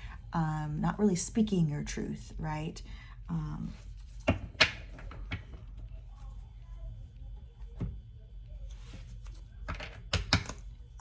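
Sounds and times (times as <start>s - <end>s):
cards tapping on a table: 4.2s - 5.6s, 9.7s - 10.6s.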